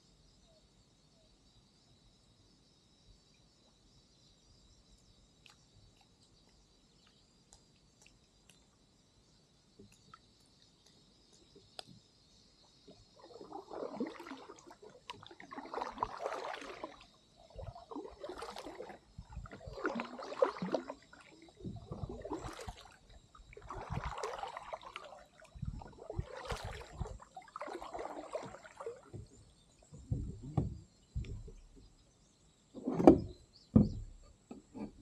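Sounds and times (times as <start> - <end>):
paddle splashing in water: 12.8 - 31.9, 32.8 - 35.0.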